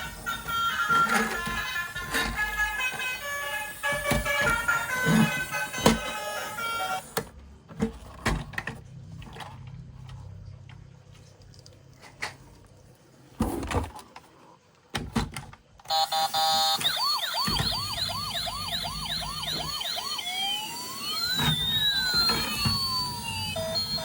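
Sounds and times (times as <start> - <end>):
toy electronic siren: 0.0 - 7.2, 15.9 - 24.0.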